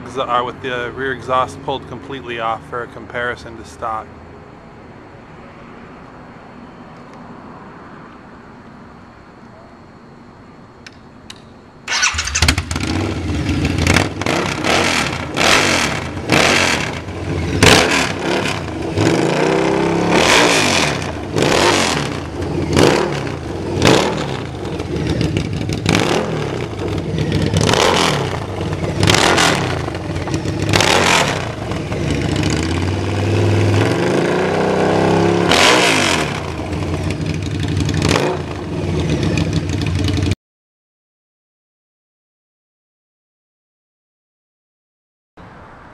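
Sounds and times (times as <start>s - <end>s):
motorcycle idling with throttle blips: 10.8s - 19.8s, 20.9s - 33.9s, 36.3s - 40.4s
motorcycle engine starting: 11.3s - 40.4s.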